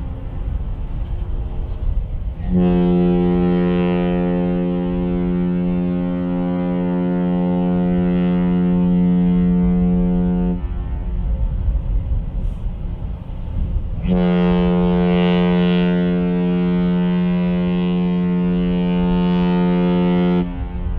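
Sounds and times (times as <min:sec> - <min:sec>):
low rumble: 0:00.0 - 0:20.9
ship's horn blast: 0:02.4 - 0:11.0, 0:14.0 - 0:20.9.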